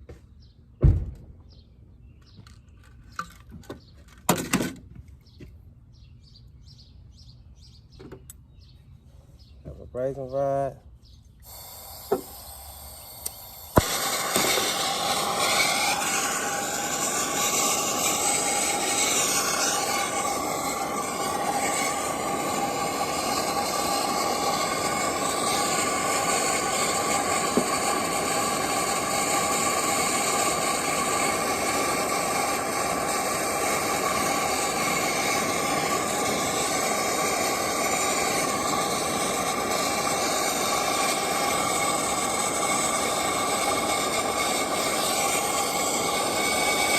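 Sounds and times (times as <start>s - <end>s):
torch flame hissing: 11.4s - 46.9s
torch igniter click: 11.4s - 46.9s.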